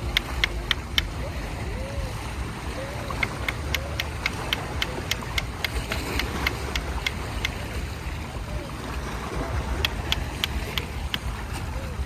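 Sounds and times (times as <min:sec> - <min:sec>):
tool tapping on rock: 0:03.2 - 0:07.6, 0:09.8 - 0:11.3.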